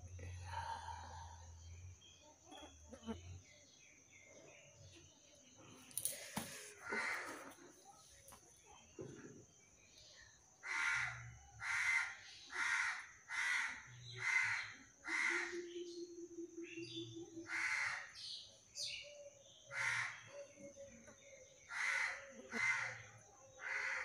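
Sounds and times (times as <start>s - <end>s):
crow cawing: 6.8s - 7.6s, 10.6s - 15.6s, 17.5s - 18.2s, 21.7s - 23.0s, 23.6s - 24.0s.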